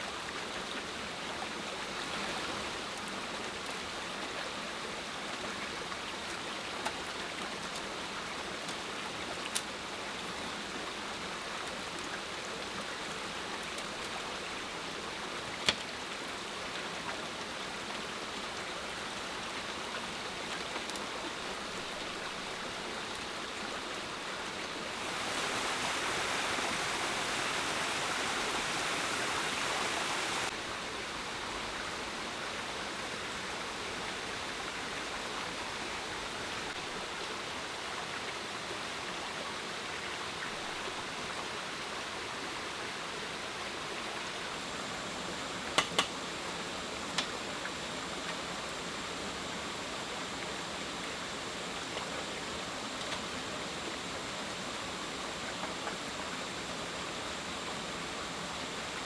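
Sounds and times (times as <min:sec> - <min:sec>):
rushing water: 0:00.0 - 0:59.0.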